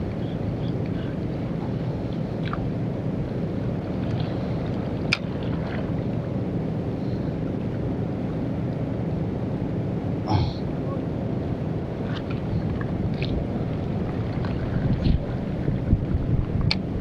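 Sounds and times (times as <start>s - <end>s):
surf: 0.0s - 17.0s
wind buffeting microphone: 11.6s - 17.0s.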